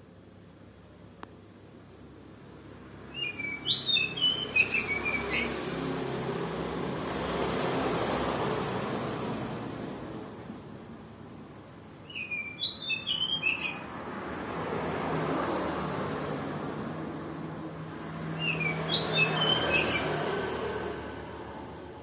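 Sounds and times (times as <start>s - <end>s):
bird singing whistled notes: 3.1s - 5.6s, 12.0s - 13.9s, 18.4s - 20.2s.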